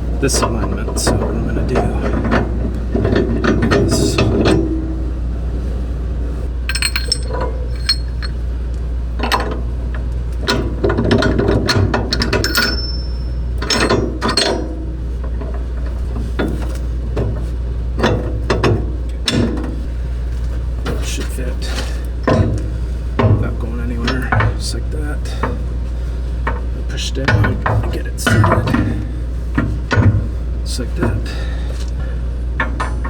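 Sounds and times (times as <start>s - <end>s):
steady low hum: 0.0s - 33.0s
metal parts clicking and clinking: 6.6s - 8.5s, 9.2s - 16.8s.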